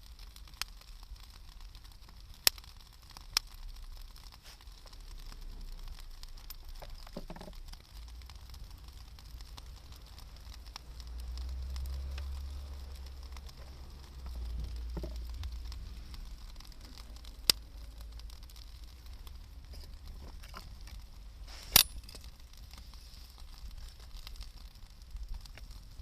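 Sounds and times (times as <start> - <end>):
campfire crackling faintly: 0.0 - 26.0
sharp fire pops: 0.0 - 26.0
low rumble: 7.4 - 26.0.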